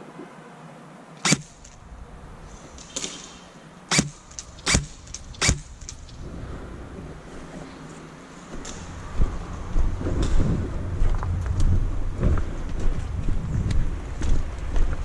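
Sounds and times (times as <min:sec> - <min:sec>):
airsoft gun shots: 0:01.2 - 0:01.8, 0:02.9 - 0:06.0.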